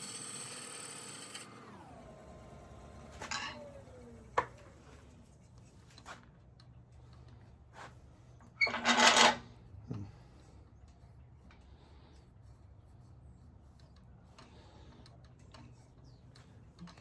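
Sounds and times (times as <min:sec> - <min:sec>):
wood lathe spinning down: 0:00.0 - 0:04.7.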